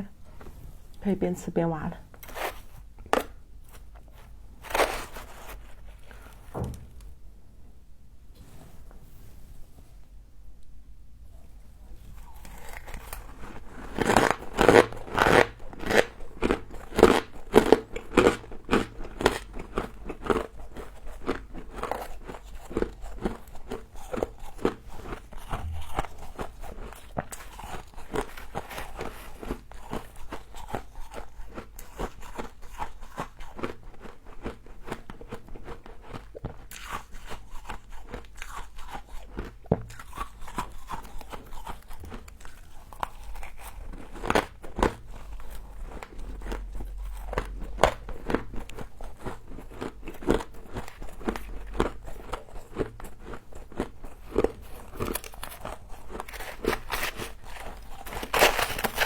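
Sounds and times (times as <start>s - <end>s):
chewing crunchy ice: 12.0s - 59.0s.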